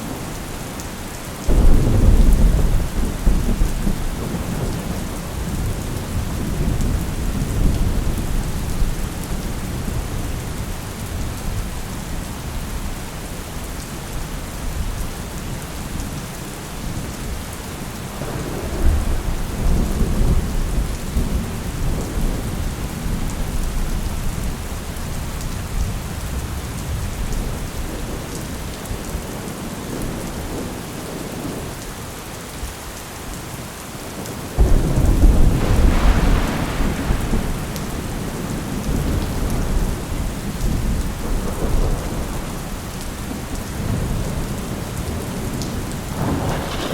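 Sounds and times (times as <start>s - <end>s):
steady rain: 0.0s - 46.9s
thunder rolling: 1.5s - 9.5s, 18.2s - 23.6s, 34.6s - 46.9s.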